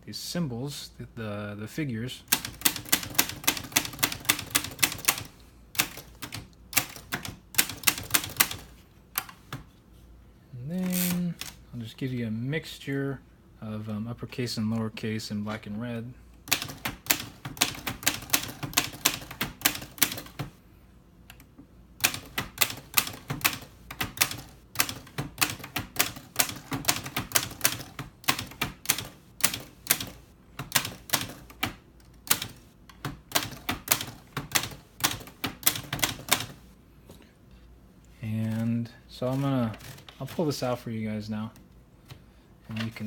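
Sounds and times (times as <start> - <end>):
manual typewriter typing: 2.3 - 9.6, 10.8 - 11.6, 16.5 - 20.6, 22.0 - 36.7, 38.4 - 40.8.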